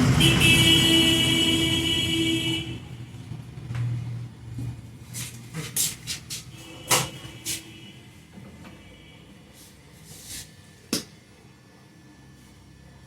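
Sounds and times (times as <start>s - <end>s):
vehicle horn: 0.0s - 3.0s, 6.5s - 9.4s.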